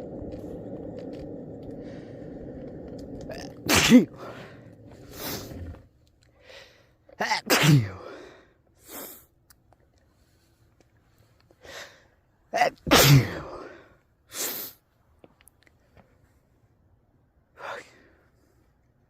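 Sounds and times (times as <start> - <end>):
skateboard wheels rolling on pavement: 0.0 - 6.0
woman sneezing: 12.9 - 13.5.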